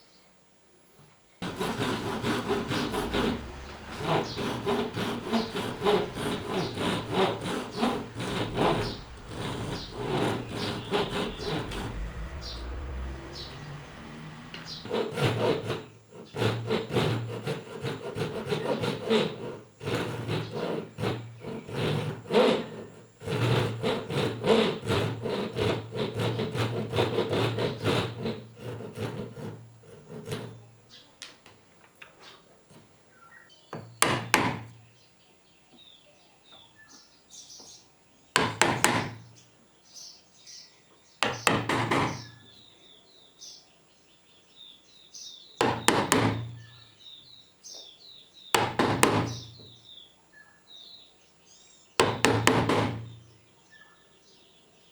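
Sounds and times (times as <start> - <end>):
hand tool rasping on wood: 1.4 - 30.6, 45.6 - 46.6, 52.0 - 53.2.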